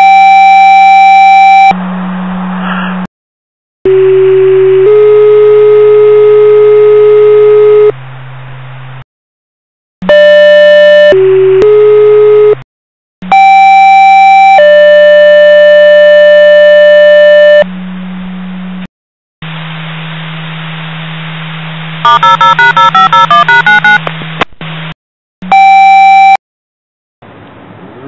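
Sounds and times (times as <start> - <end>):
two-tone paging beeps: 22.1 - 24.0.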